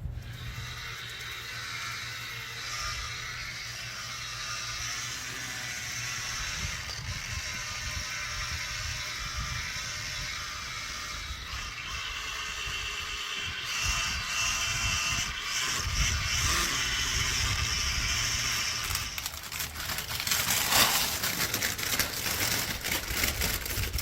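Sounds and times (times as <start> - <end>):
electric polisher whirring: 0.2 - 24.0
clicking and scraping: 17.4 - 24.0.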